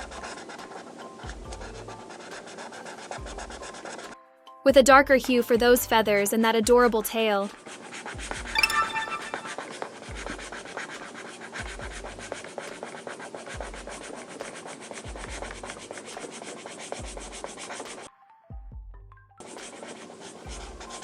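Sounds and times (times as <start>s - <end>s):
colouring strokes scratching paper: 0.0s - 4.1s, 7.7s - 8.1s, 10.5s - 15.0s, 15.7s - 18.0s, 19.4s - 21.0s.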